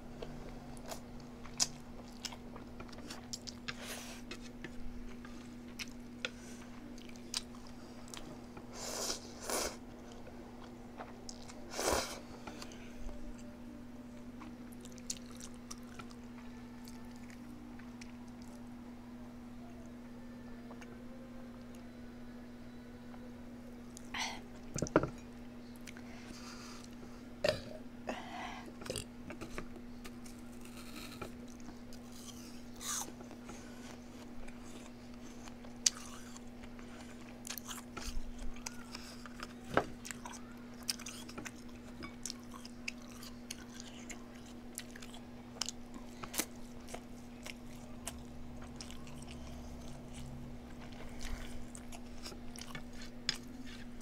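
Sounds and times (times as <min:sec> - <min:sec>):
steady low hum: 0:00.0 - 0:54.0
person chewing crunchy food: 0:00.8 - 0:08.3, 0:14.4 - 0:16.2, 0:28.8 - 0:54.0.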